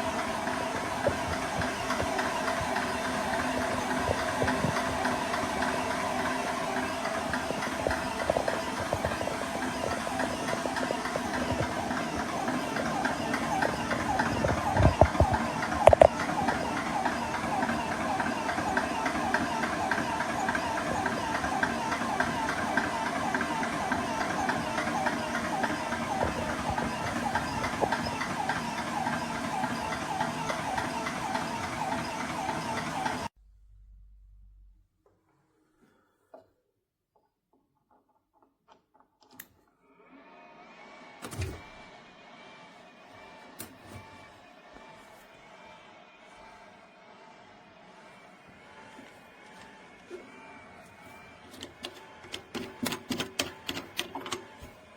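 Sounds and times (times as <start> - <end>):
air compressor running: 0.0 - 33.3, 48.8 - 54.8.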